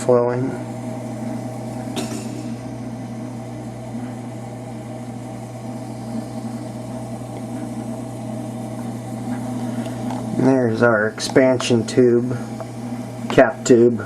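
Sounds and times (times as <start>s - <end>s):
refrigerant flowing: 0.0s - 14.0s
refrigerator compressor humming: 0.0s - 14.0s.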